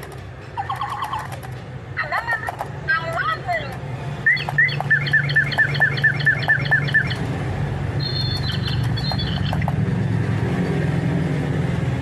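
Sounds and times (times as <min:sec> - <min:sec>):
lovebirds chirping: 0:04.3 - 0:07.3, 0:08.0 - 0:09.8.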